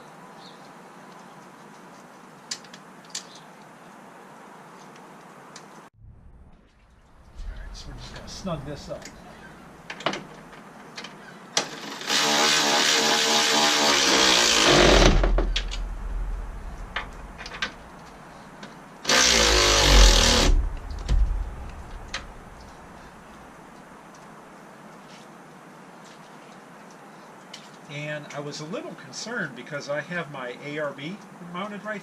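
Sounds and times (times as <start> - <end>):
impact tool whining and hammering: 11.6 - 17.9, 19.1 - 23.0.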